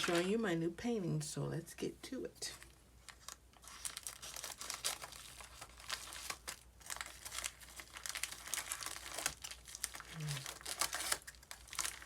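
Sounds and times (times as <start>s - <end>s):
packaging crinkling and rustling: 0.0s - 0.4s, 2.5s - 12.0s
packaging tearing: 3.1s - 12.0s.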